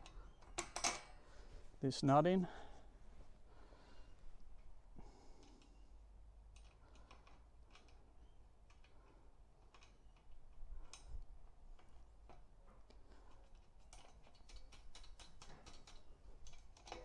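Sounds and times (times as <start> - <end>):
small metallic clicks and taps: 11.8 - 17.0.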